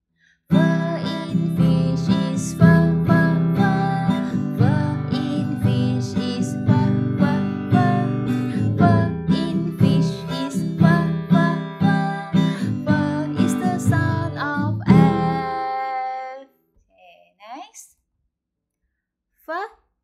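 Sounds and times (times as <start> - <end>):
acoustic guitar strumming chords: 0.5 - 15.8.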